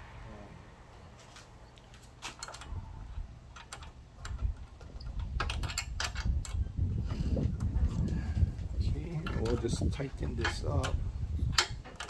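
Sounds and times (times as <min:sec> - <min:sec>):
low handling rumble: 0:00.0 - 0:11.9
light metal clicks and taps: 0:09.2 - 0:12.0.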